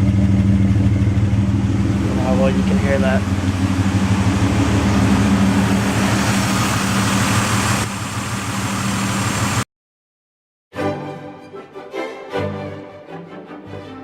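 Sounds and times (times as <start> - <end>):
car engine idling rough: 0.0 - 9.6.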